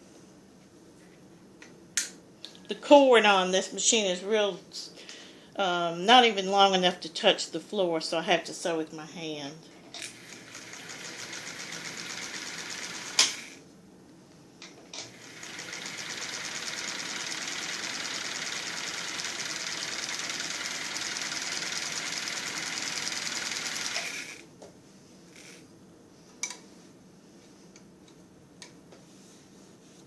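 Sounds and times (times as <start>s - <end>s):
sewing machine stitching: 10.1s - 13.6s, 15.1s - 24.4s.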